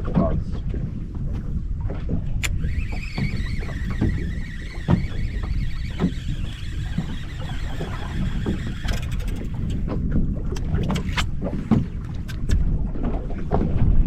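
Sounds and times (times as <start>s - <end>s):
low rumble of wind and water: 0.0s - 14.0s
water slapping boat hull: 0.0s - 14.0s
faint high whine: 2.4s - 9.8s.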